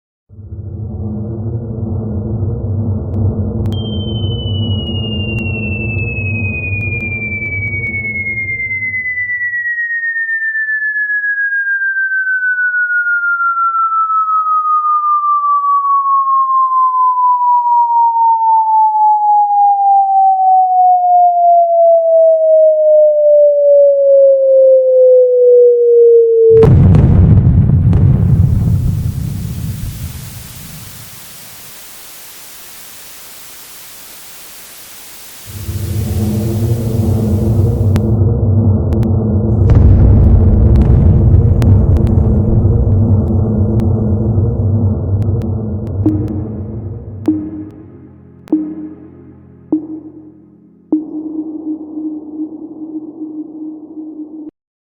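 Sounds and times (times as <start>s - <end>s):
explosion rumble: 0.3s - 8.2s, 26.6s - 31.8s, 35.4s - 49.2s
low rumbling blast: 0.3s - 8.4s, 26.6s - 31.4s, 35.5s - 48.0s
falling bomb whistle: 3.7s - 29.9s, 35.5s - 38.2s
steady hiss: 28.4s - 38.0s.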